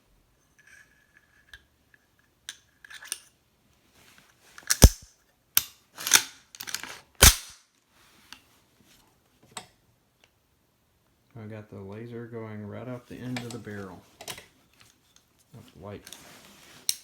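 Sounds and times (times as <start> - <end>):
light clicks of pistol handling: 4.6 - 7.6
pistol slide metallic clacks: 4.6 - 7.6.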